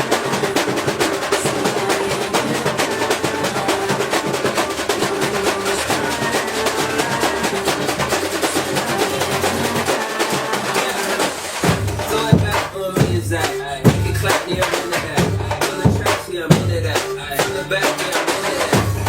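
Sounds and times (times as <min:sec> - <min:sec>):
drums beating fast rhythm: 0:00.0 - 0:19.0
steady bass line: 0:11.6 - 0:17.9.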